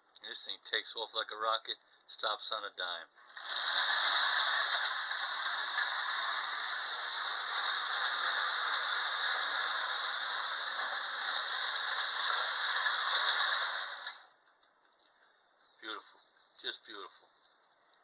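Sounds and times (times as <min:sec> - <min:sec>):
toy train rattling whir: 0:03.2 - 0:14.4
wheels clacking on rails: 0:03.3 - 0:14.3.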